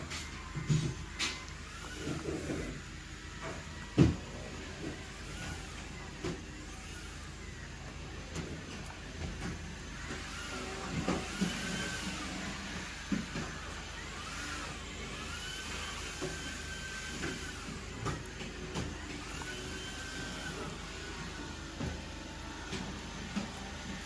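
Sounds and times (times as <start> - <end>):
vacuum cleaner motor whine: 0.0 - 24.0.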